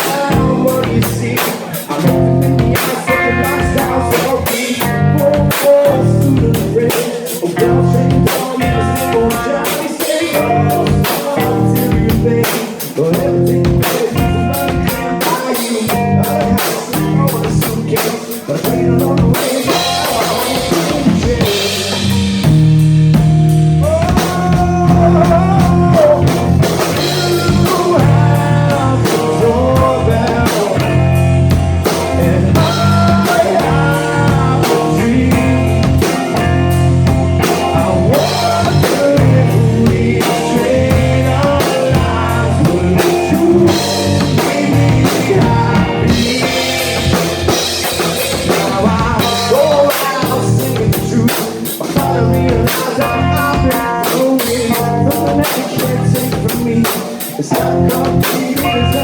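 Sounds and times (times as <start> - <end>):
melodic lead guitar line: 0.0 - 59.0
rock band playing: 0.0 - 59.0.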